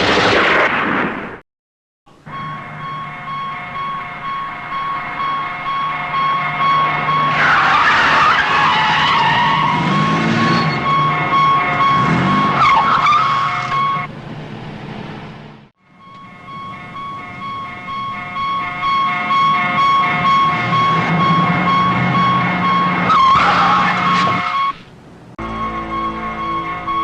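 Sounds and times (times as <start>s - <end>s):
steady high tone: 2.1s - 14.1s, 25.4s - 27.0s
tyres screeching: 4.8s - 14.1s, 17.1s - 27.0s
car engine revving: 6.2s - 15.6s.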